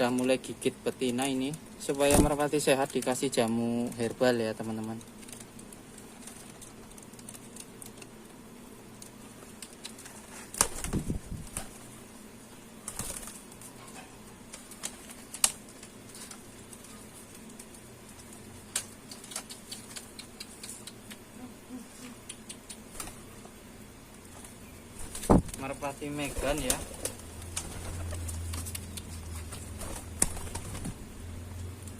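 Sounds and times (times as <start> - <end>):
pigeons flapping wings: 1.0 - 8.1, 9.2 - 12.0, 12.8 - 13.8, 14.4 - 20.2, 22.6 - 23.3, 24.3 - 31.1.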